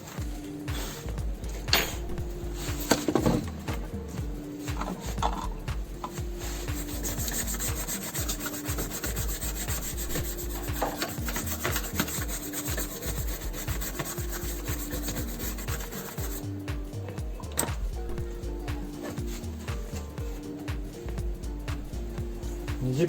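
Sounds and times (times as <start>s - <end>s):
brush scrubbing circuit board: 0.0s - 16.6s
background music: 0.0s - 23.0s.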